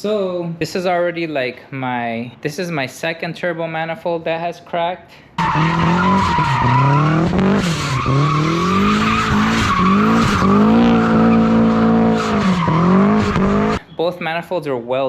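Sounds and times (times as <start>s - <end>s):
car engine accelerating hard: 5.4s - 13.8s.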